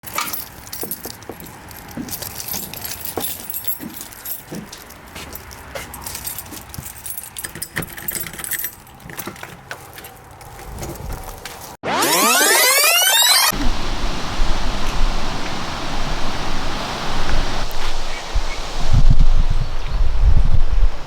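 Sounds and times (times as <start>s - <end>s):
metallic jingling and clicking: 0.0s - 10.6s.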